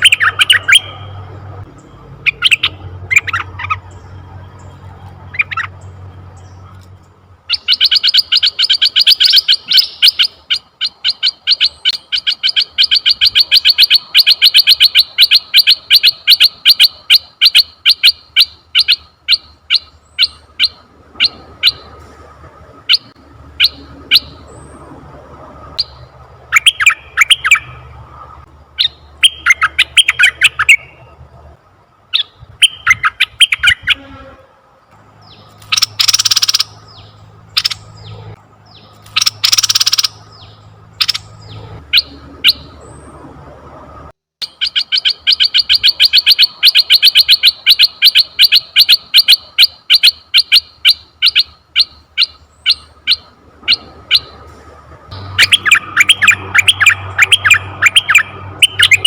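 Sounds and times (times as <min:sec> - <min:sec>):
bird chirping and trilling: 0:00.0 - 0:06.8, 0:07.4 - 0:22.0, 0:22.8 - 0:25.0, 0:25.8 - 0:28.0, 0:28.7 - 0:31.2, 0:32.1 - 0:34.3, 0:35.2 - 0:43.3, 0:44.4 - 0:54.4, 0:55.1 - 0:59.0
harsh bird calls: 0:00.0 - 0:31.3, 0:32.1 - 0:43.4, 0:44.4 - 0:59.0.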